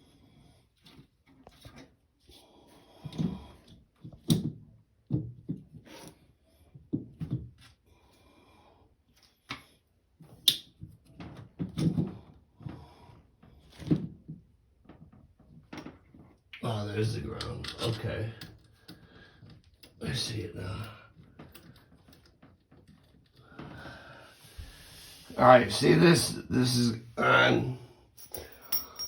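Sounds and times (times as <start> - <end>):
parts and tools clattering: 28.2 - 29.0.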